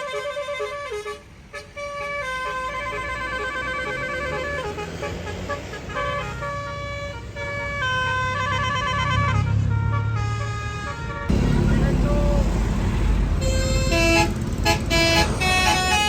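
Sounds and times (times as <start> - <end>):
bus engine rumbling: 0.0 - 16.0
bus horn playing a tune: 0.0 - 16.0.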